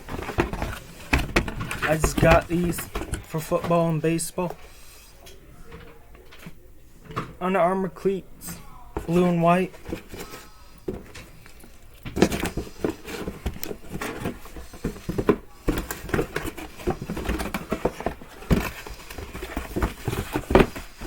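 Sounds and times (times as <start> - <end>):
gear rustling and tapping: 0.0 - 3.4.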